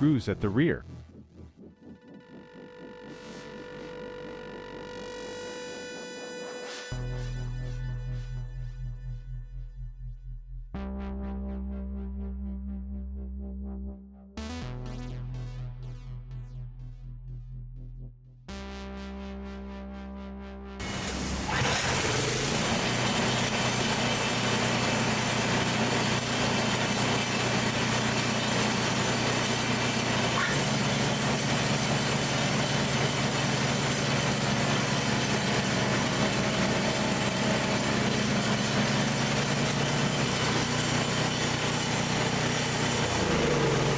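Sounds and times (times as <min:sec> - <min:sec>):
snow blower engine running: 0:20.8 - 0:43.9.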